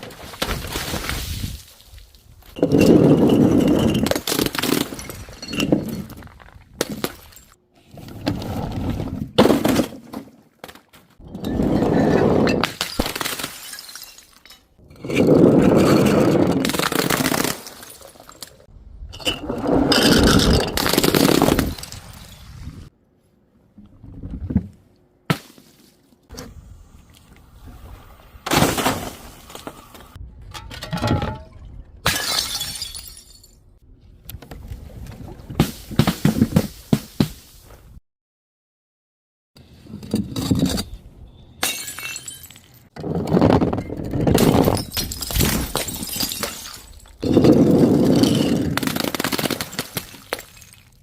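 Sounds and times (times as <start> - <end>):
glass bottles smashing: 11.3 - 14.8, 16.5 - 22.4, 30.8 - 33.6, 41.6 - 42.8, 44.3 - 51.0.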